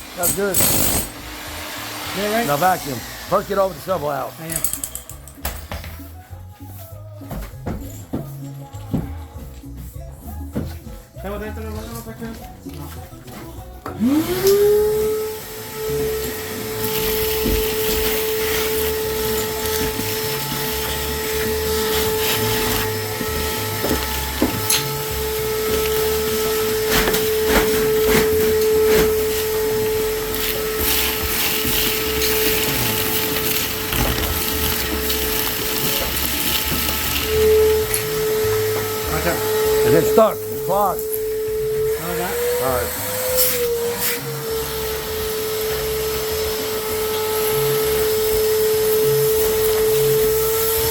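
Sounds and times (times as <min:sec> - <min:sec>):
vacuum cleaner whining: 0:00.0 - 0:04.8, 0:11.3 - 0:50.9
debris rattling in vacuum: 0:15.7 - 0:40.6.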